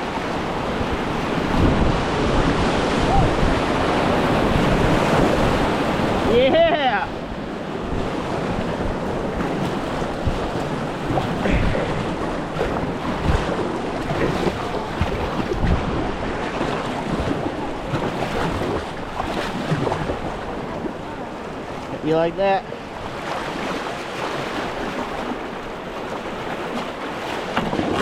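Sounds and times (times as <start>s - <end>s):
wind buffeting microphone: 0.0s - 21.9s
rushing splashing water: 0.0s - 28.0s.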